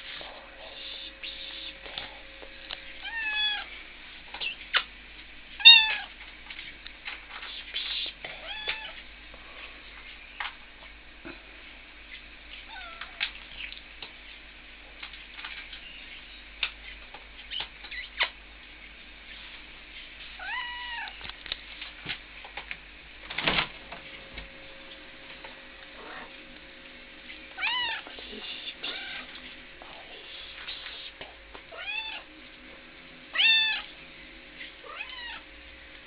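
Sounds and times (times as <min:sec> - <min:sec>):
cat meowing: 0:03.0 - 0:03.7, 0:05.6 - 0:06.1, 0:20.4 - 0:21.2, 0:27.6 - 0:28.1, 0:28.8 - 0:29.3, 0:31.7 - 0:32.3, 0:33.3 - 0:33.9, 0:34.8 - 0:35.4.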